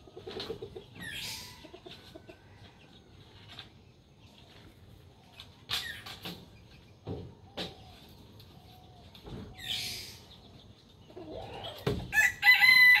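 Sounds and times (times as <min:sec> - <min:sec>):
rooster crowing: 0:12.1 - 0:13.0.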